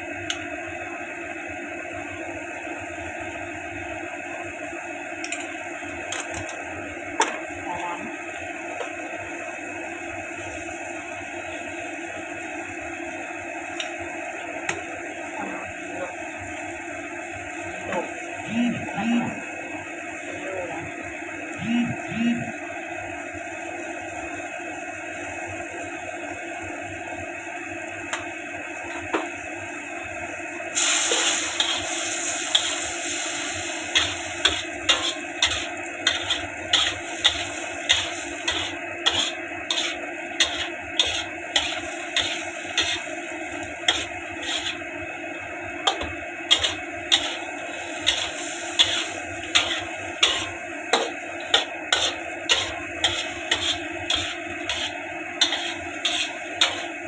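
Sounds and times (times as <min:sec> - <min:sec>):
noodles sizzling in frying pan: 0:08.2 - 0:18.4, 0:22.6 - 0:57.0
spatula scraping a pan: 0:31.1 - 0:32.8, 0:33.9 - 0:43.1, 0:43.8 - 0:44.8, 0:45.9 - 0:57.0.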